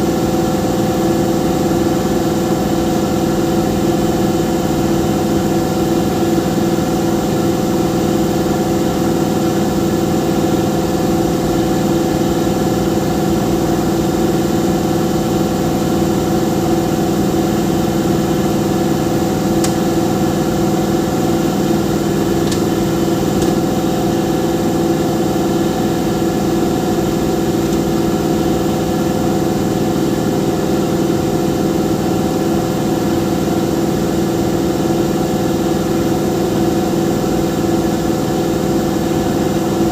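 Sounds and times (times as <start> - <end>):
machine engine idling: 12.9 - 31.3.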